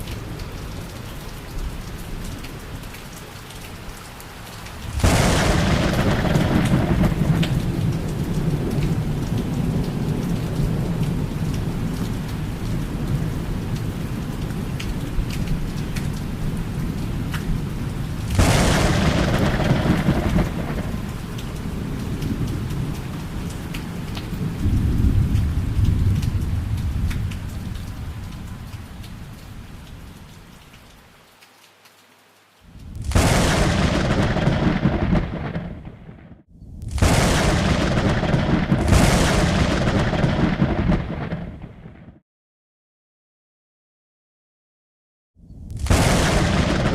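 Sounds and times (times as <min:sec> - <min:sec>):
steady rain: 0:00.0 - 0:42.2, 0:45.5 - 0:46.9
sharp thunderclap: 0:04.7 - 0:09.9, 0:18.3 - 0:21.2, 0:32.9 - 0:42.2, 0:45.6 - 0:46.9
thunder rolling: 0:04.7 - 0:11.2, 0:18.3 - 0:22.7, 0:32.9 - 0:42.2, 0:45.6 - 0:46.9.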